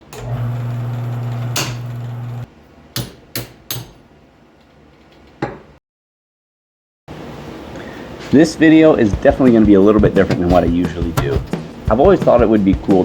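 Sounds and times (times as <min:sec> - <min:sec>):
electric motor hum: 0:00.1 - 0:02.5.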